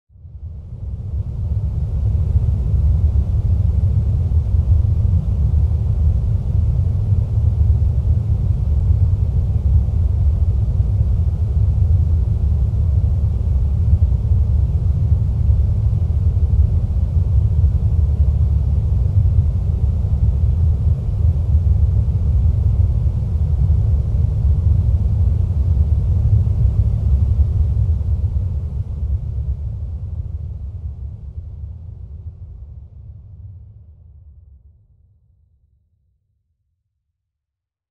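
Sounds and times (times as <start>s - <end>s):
deep ambient rumble: 0.2s - 35.0s.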